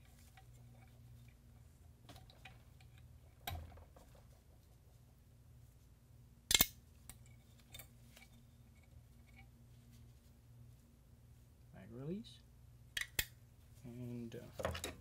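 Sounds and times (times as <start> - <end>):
metal rifle parts clicking: 6.5 - 8.4.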